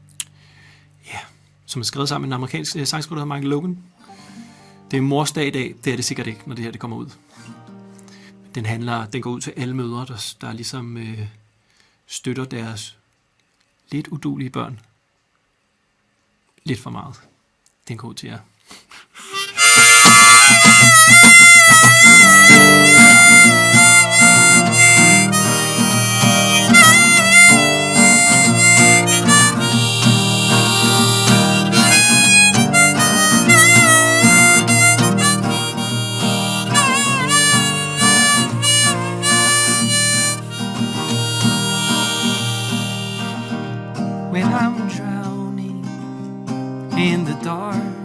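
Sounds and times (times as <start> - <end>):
acoustic guitar chords: 4.1 - 8.6, 19.2 - 48.0
harmonica melody with bent notes: 19.2 - 45.0.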